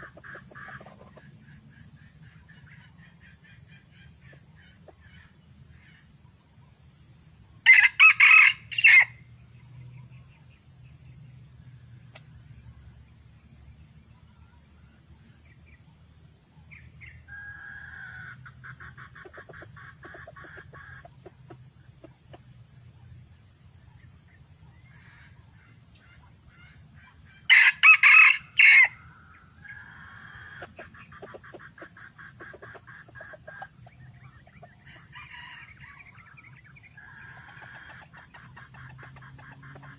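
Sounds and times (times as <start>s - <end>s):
rooster crowing: 7.6s - 9.2s, 27.5s - 30.6s.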